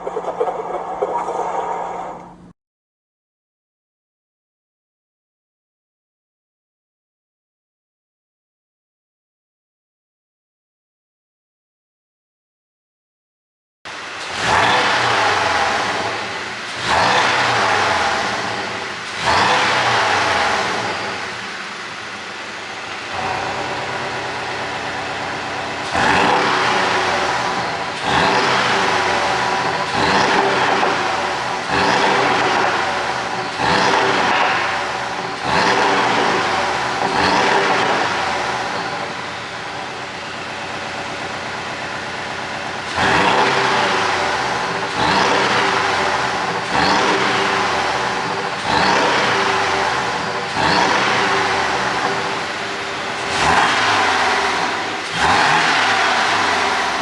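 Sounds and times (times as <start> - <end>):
car engine revving: 0.0 - 2.5, 13.9 - 57.0
exhaust popping and burbling: 0.0 - 2.5.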